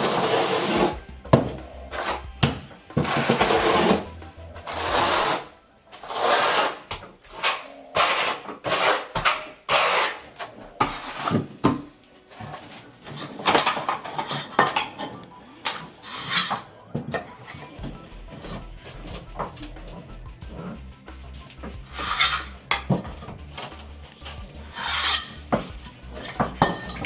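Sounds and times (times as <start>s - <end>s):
steel trowel scraping mortar: 0.0s - 11.6s, 12.3s - 16.8s, 21.8s - 27.0s.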